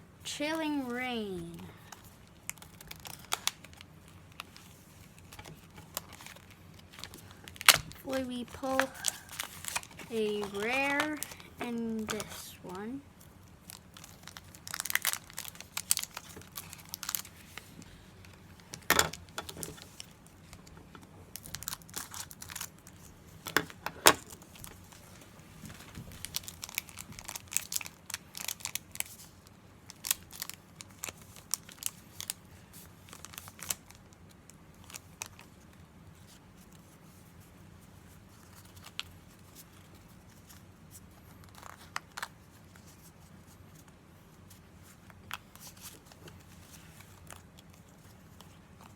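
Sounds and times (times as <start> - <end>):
foil wrapper tearing and crinkling: 1.9 - 12.4, 13.4 - 17.7, 21.3 - 23.6, 25.7 - 36.4, 41.4 - 43.5.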